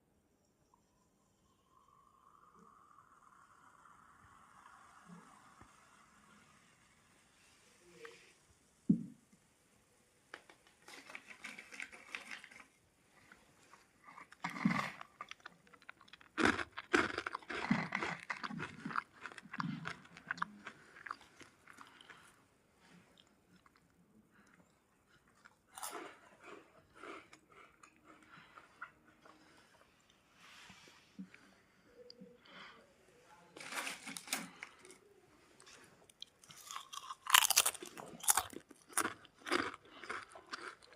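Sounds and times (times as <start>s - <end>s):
crunching and chewing chips: 10.8s - 12.7s, 13.6s - 22.4s, 25.2s - 29.6s, 33.6s - 35.0s, 35.6s - 40.9s.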